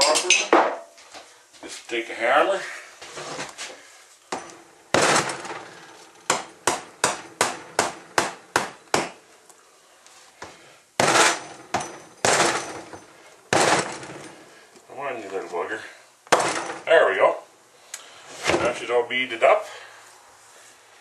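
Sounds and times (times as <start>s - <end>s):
hammer striking a tire: 4.3s - 9.2s, 11.0s - 14.3s, 16.3s - 16.9s.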